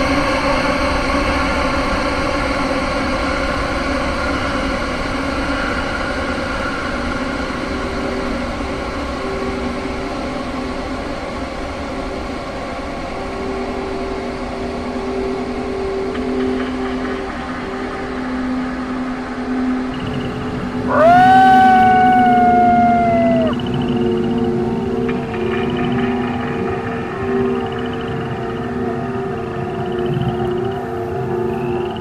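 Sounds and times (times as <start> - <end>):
droning horror ambience: 0.0 - 32.0
low held tones: 20.8 - 23.8.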